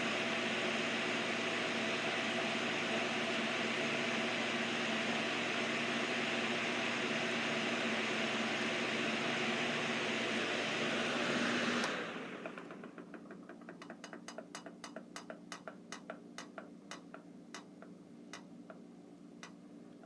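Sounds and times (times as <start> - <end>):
fan ticking as it stops: 11.8 - 18.8.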